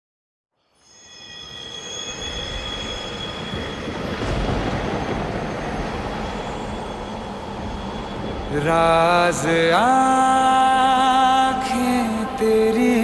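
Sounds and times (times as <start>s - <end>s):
high-pitched squealing tones: 0.8s - 13.0s
rumbling hissing noise: 0.8s - 13.0s.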